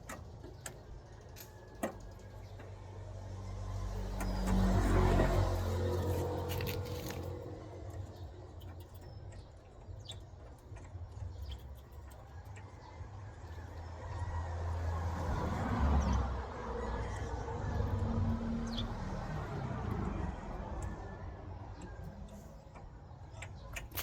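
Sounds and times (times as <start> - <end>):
small clicks: 21.8 - 24.0.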